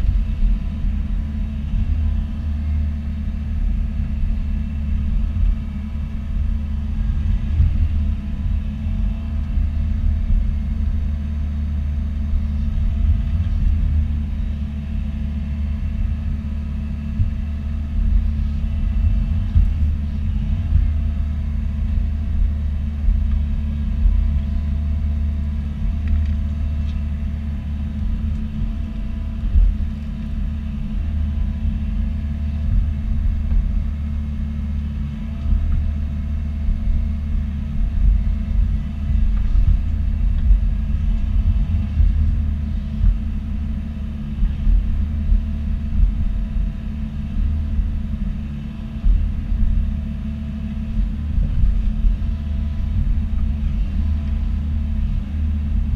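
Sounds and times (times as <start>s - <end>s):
excavator diesel engine rumbling: 0.0s - 55.9s.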